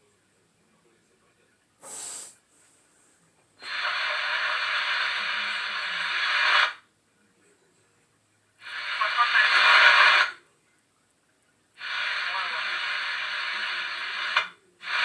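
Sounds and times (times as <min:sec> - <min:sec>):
hissing breath sounds: 0:01.8 - 0:06.6.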